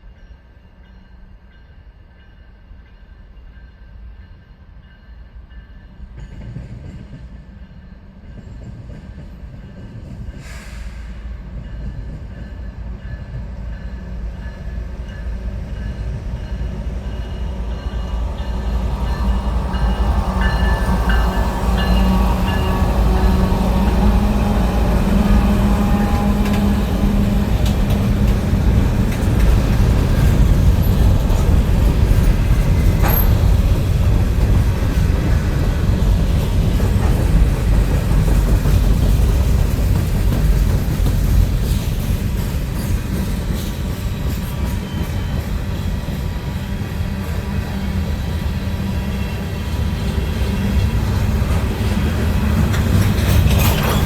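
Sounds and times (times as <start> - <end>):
freight train rumble: 0.0 - 54.0
steel wheels clattering on rails: 15.8 - 48.5, 49.2 - 54.0.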